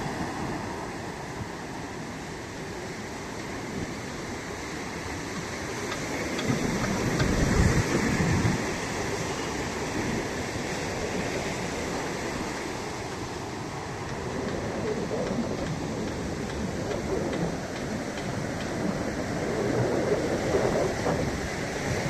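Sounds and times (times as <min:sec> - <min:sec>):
ocean surf rushing: 0:00.0 - 0:22.0.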